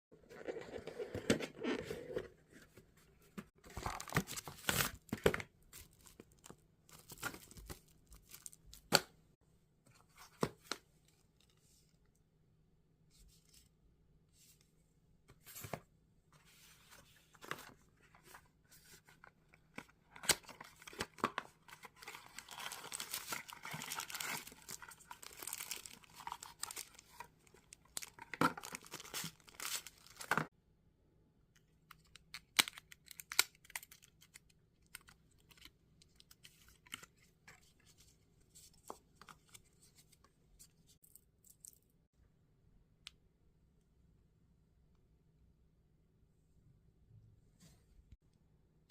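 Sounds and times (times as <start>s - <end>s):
packaging rustling and tearing: 20.2s - 30.5s.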